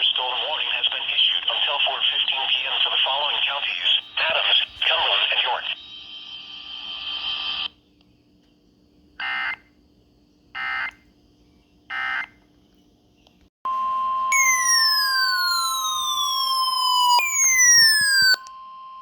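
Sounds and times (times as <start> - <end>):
loud steady tone: 13.7 - 19.0
steady high tone: 13.7 - 19.0
digital data bursts: 14.3 - 18.4.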